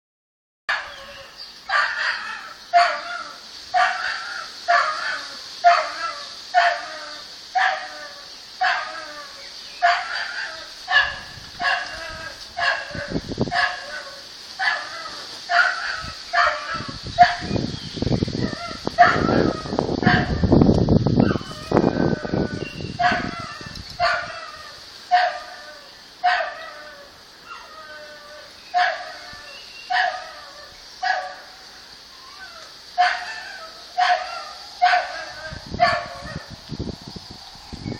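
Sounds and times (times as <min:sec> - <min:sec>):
dog whining: 0:21.2 - 0:24.6.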